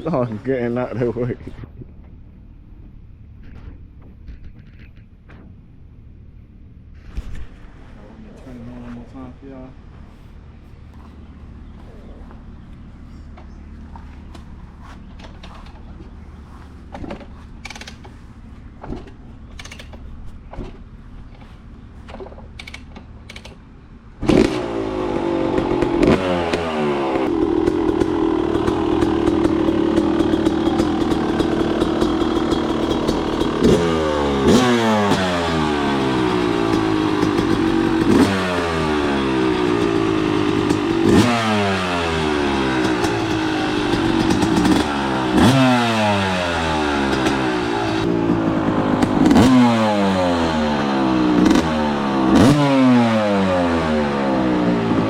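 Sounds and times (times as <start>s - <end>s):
dirt bike engine starting: 10.9s - 55.0s
dirt bike engine revving: 21.3s - 55.0s.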